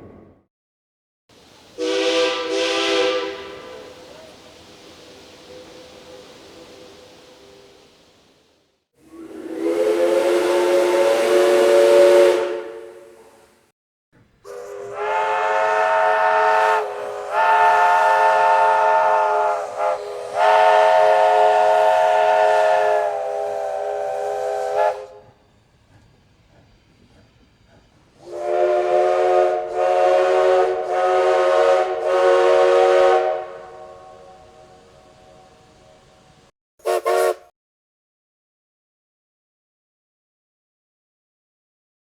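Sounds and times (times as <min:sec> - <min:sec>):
hiss rushing: 0:01.3 - 0:12.2, 0:14.5 - 0:25.2
train whistle blowing: 0:01.8 - 0:04.4, 0:05.4 - 0:07.8, 0:09.0 - 0:13.6, 0:14.4 - 0:25.4, 0:28.2 - 0:36.2, 0:36.8 - 0:37.5.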